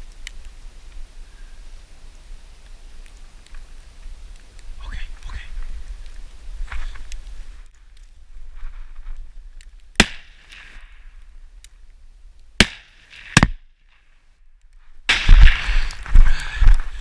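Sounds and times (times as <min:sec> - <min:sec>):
rifle shots: 0:10.0 - 0:10.8, 0:12.6 - 0:13.6.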